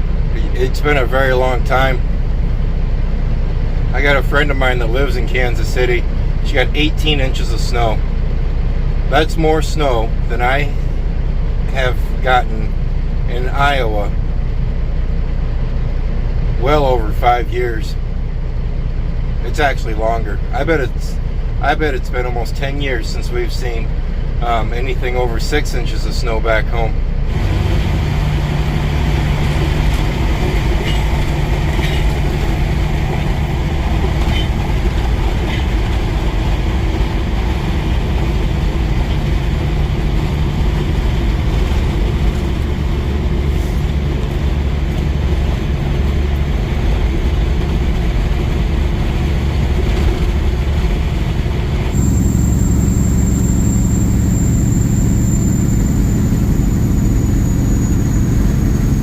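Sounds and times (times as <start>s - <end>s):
truck engine and road drone: 0.0s - 59.0s
thin high whine: 27.3s - 40.5s, 51.9s - 59.0s.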